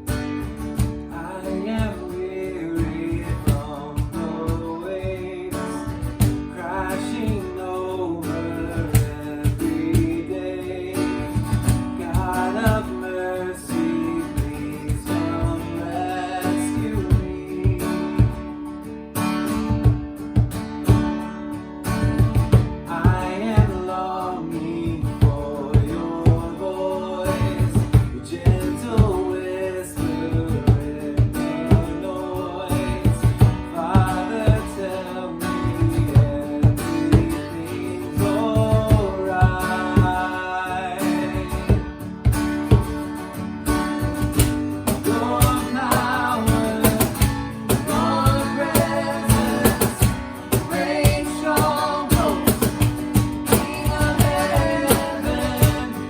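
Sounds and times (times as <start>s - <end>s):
acoustic guitar strumming: 0.0s - 56.0s
voices singing: 1.0s - 18.6s, 22.3s - 43.0s, 43.8s - 56.0s
steady drum beat: 2.8s - 5.3s, 8.7s - 10.3s, 11.2s - 13.0s, 16.5s - 18.5s, 19.7s - 21.2s, 22.0s - 23.9s, 27.4s - 29.3s, 30.3s - 32.0s, 32.8s - 34.8s, 38.2s - 40.4s, 41.4s - 43.1s, 43.8s - 56.0s.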